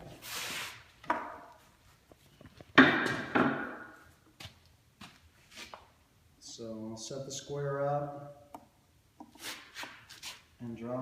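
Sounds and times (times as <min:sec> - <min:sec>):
wood and tools knocking: 0:01.0 - 0:01.5, 0:02.7 - 0:04.0.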